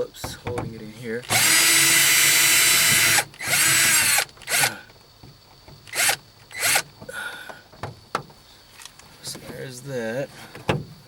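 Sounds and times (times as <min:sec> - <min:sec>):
power drill running in bursts: 0:01.3 - 0:04.8, 0:05.9 - 0:06.8.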